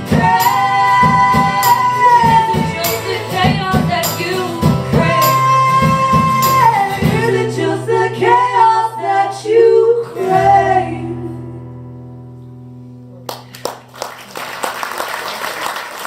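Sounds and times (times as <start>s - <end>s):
women singing: 0.0s - 11.8s
acoustic guitar: 0.0s - 14.7s.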